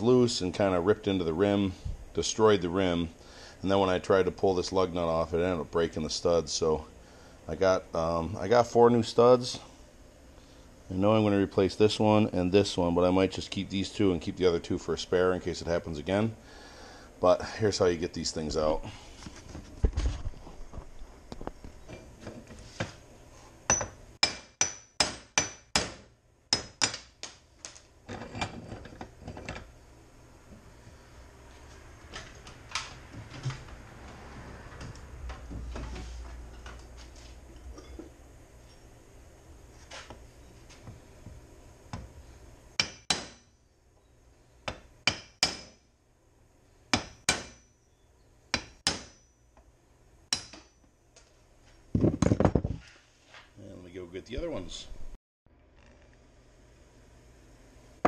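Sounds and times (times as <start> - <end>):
hammer striking steel: 23.7 - 27.1, 42.8 - 43.5, 45.0 - 45.8, 46.9 - 47.7, 48.6 - 49.3, 50.3 - 50.8.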